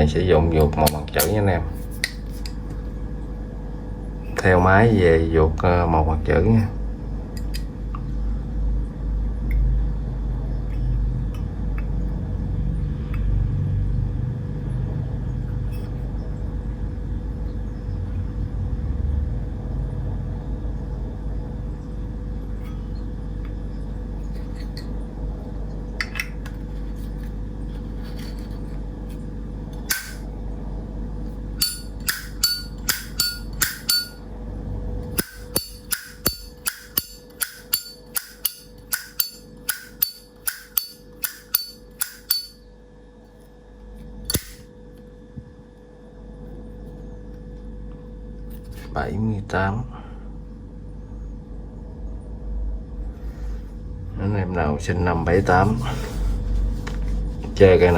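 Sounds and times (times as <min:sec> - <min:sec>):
steady low hum: 0:00.0 - 0:57.9.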